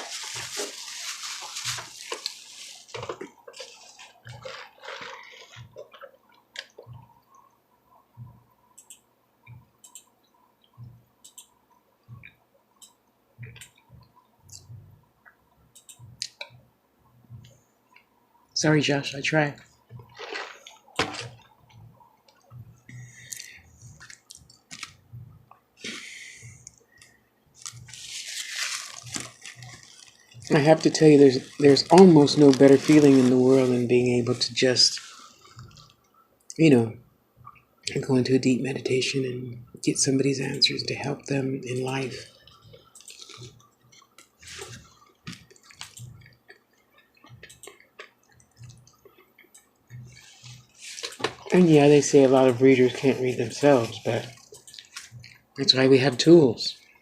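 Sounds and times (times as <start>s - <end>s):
wet chewing and lip smacks: 19.9s - 25.4s, 42.3s - 51.5s, 54.2s - 55.5s.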